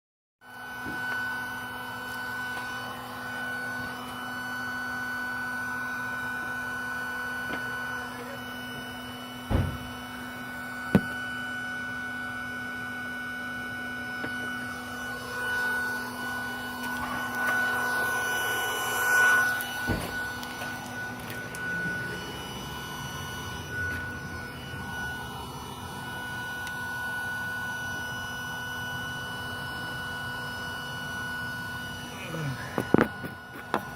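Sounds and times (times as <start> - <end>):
machine whining and humming: 0.4 - 33.9
sharp knocks: 9.5 - 9.9.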